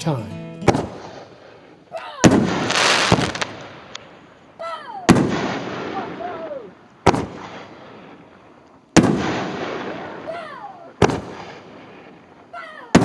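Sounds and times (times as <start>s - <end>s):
fireworks bursts: 0.6s - 13.0s.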